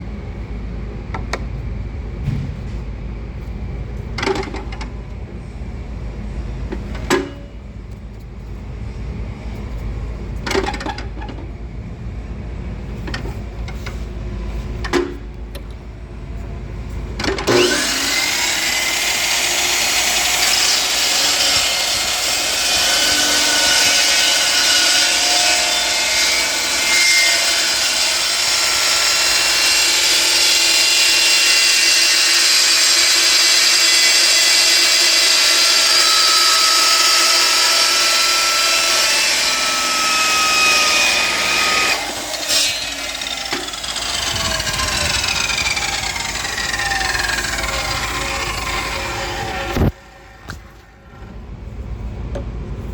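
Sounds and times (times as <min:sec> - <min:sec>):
chop saw motor running: 0:17.5 - 0:50.6.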